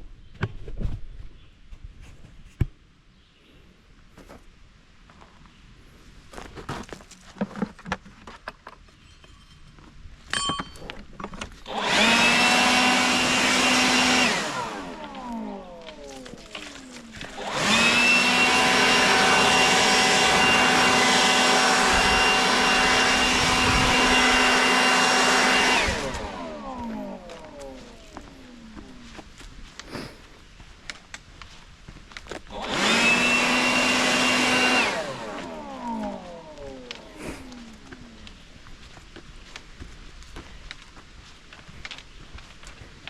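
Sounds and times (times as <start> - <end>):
high-speed electric motor whine: 11.6 - 29.4, 32.4 - 38.6.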